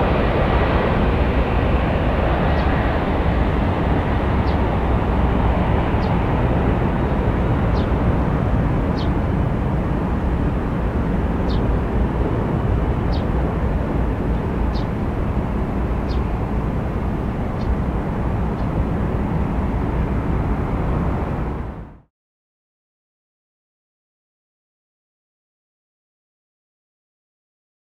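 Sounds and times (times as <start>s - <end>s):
jet engines roaring: 0.0s - 22.0s.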